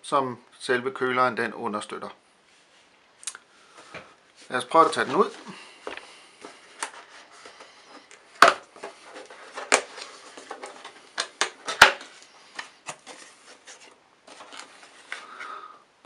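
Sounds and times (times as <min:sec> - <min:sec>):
cardboard box rustling and scraping: 0:12.9 - 0:15.2.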